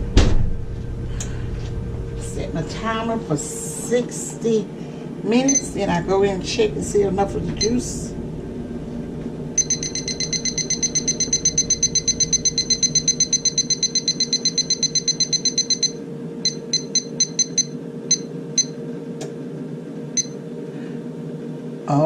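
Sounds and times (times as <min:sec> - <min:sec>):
steady hum: 0:00.0 - 0:22.0
kitchen timer beeping: 0:05.4 - 0:05.8, 0:09.6 - 0:18.8, 0:20.2 - 0:20.4.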